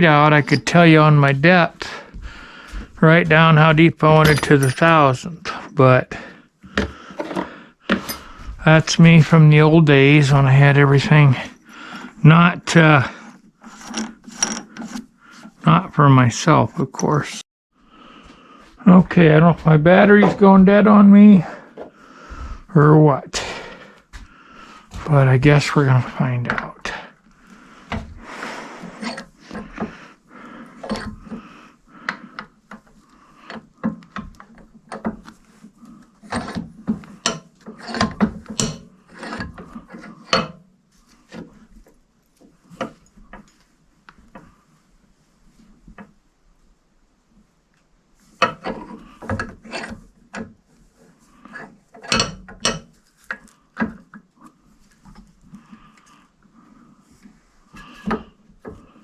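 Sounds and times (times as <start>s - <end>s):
tools and metal parts clattering: 0.3s - 0.9s, 4.0s - 5.6s, 7.2s - 8.4s, 13.7s - 15.0s, 36.2s - 40.6s, 52.0s - 53.4s.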